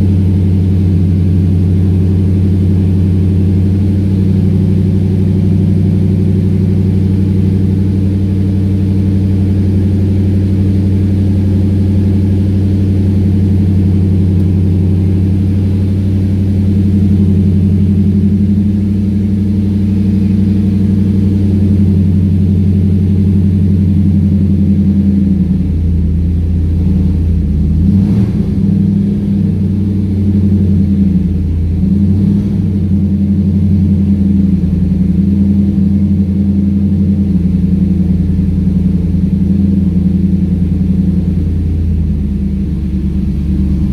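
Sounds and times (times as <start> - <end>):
truck engine idling: 0.0 - 43.9.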